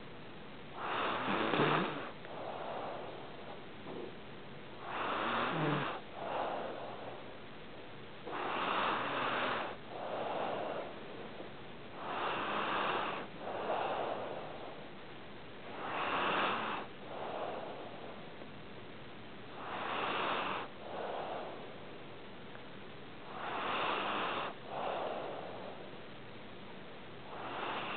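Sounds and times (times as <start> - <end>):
pet snoring: 0.8 - 4.2, 4.8 - 7.3, 8.2 - 14.8, 15.6 - 18.2, 19.5 - 21.8, 23.2 - 25.9, 27.2 - 27.9.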